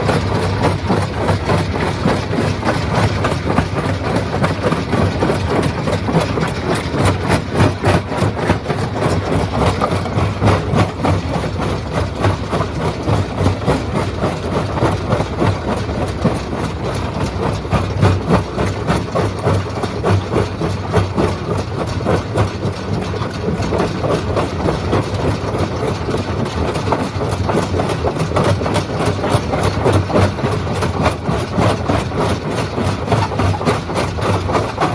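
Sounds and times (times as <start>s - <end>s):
stone crusher hum: 30.2s - 34.9s.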